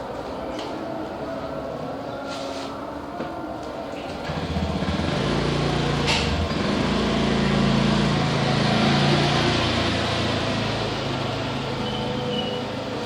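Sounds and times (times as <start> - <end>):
vehicle engine passing by: 4.2 - 13.0.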